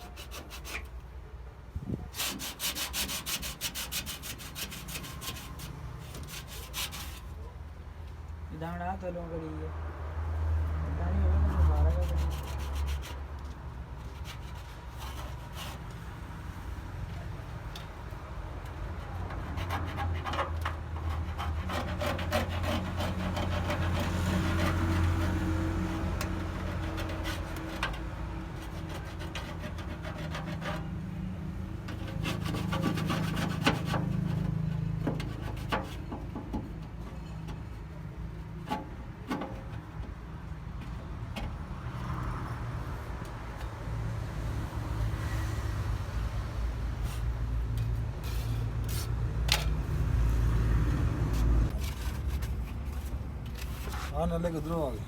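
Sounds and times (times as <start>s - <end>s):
rasping on rusted metal: 0.0s - 1.1s, 1.9s - 7.5s, 11.5s - 40.2s.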